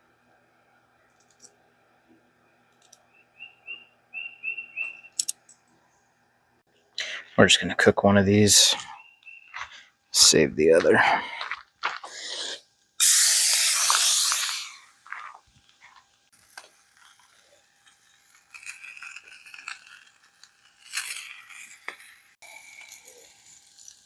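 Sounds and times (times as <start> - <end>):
quiet clicks: 2.7 - 3.0.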